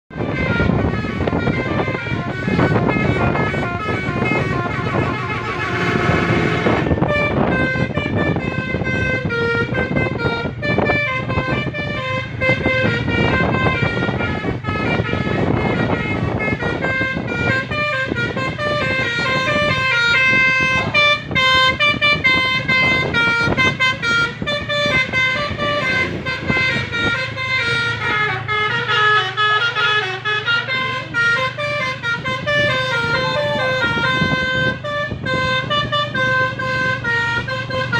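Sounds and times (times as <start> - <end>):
noisy rush: 0.1 - 29.0
multi-tone bus air horn melody: 0.1 - 37.9.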